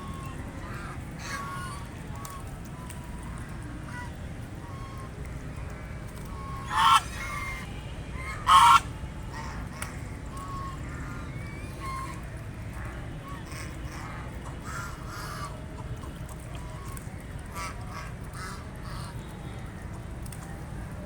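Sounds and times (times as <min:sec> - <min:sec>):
ducks quacking: 0:06.2 - 0:09.6.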